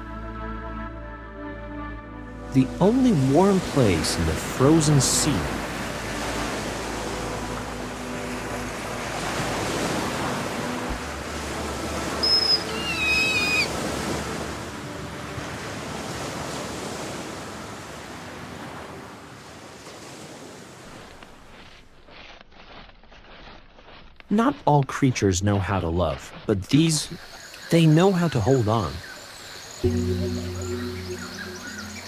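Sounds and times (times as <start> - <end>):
ocean waves washing: 2.4 - 21.4, 26.0 - 32.0
high call with falling pitch: 12.2 - 13.7, 29.8 - 32.0.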